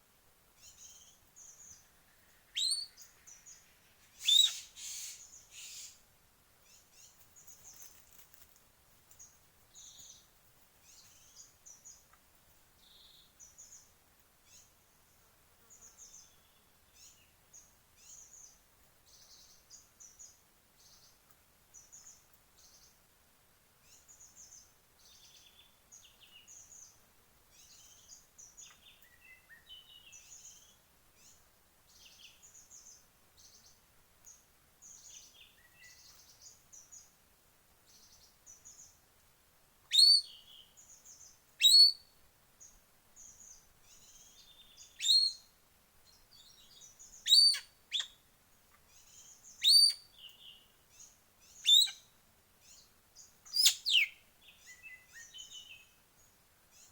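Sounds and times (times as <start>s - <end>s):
forest birds chirping: 0.0s - 56.9s
loud sharp sweeping bird call: 4.2s - 6.0s.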